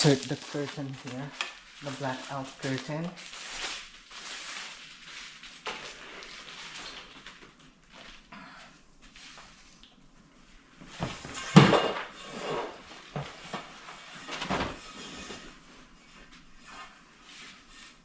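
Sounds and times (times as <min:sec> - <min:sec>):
curtain rod clattering: 0:11.0 - 0:15.6.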